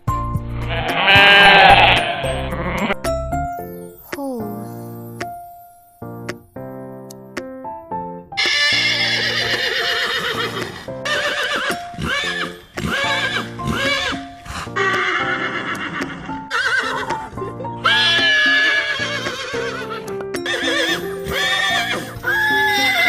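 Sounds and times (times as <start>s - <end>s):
background music: 0.0s - 23.0s
horse neighing: 0.7s - 3.0s, 8.4s - 14.2s, 14.8s - 17.2s, 17.8s - 23.0s.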